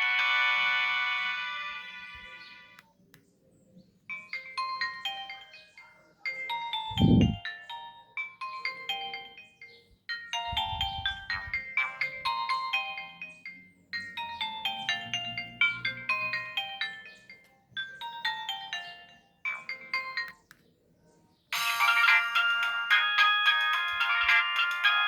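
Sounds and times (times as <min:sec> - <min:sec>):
phone ringtone melody: 0:00.0 - 0:02.8, 0:04.1 - 0:20.4, 0:21.5 - 0:25.0.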